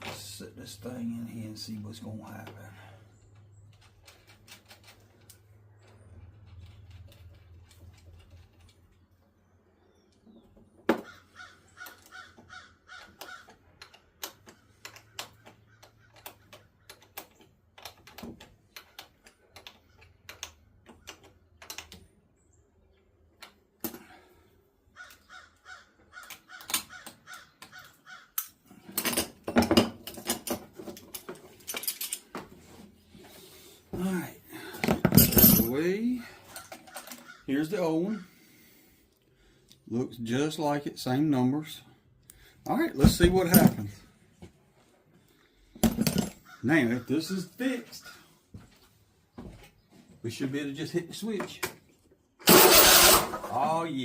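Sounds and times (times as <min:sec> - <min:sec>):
hand tools clicking and clattering: 0:26.2 - 0:32.6, 0:34.6 - 0:37.4, 0:52.4 - 0:53.7.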